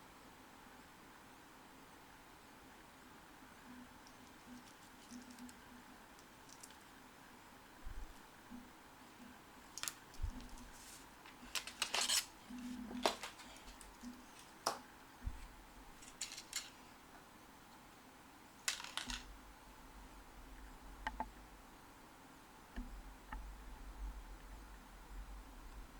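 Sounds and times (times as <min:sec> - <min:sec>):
hands handling watch packaging: 0:04.1 - 0:05.6, 0:09.7 - 0:14.8, 0:16.0 - 0:16.8, 0:18.7 - 0:19.3.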